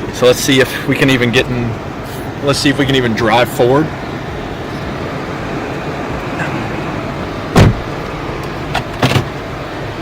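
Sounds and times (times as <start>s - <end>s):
car engine running: 0.0s - 10.0s
loud thump: 7.5s - 7.9s.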